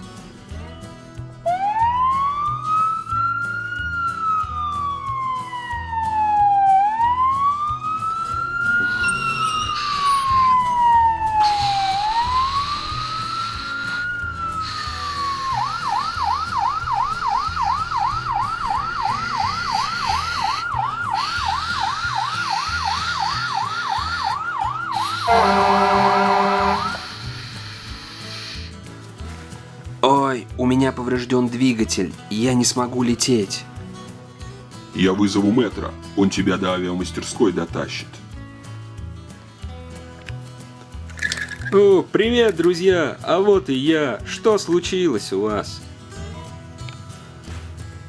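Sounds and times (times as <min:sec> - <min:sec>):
emergency siren wailing and yelping: 0:01.5 - 0:28.7
loud horn blare: 0:08.7 - 0:27.4.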